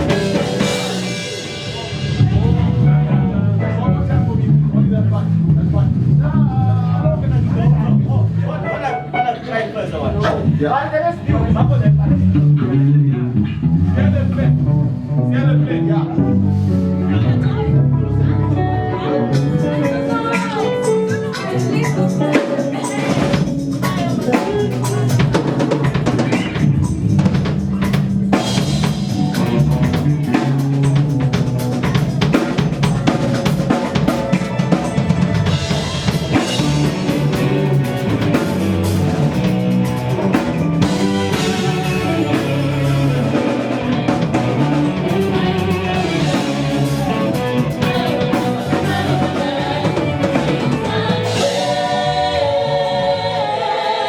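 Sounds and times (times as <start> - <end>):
drum kit kick and snare: 0.0 - 2.8, 21.3 - 53.6
instrumental band music: 0.0 - 54.0.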